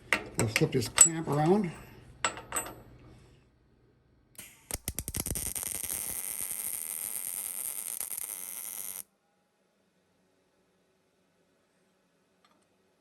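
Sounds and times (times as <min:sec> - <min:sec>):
arc welding crackle and hiss: 0:04.4 - 0:09.0.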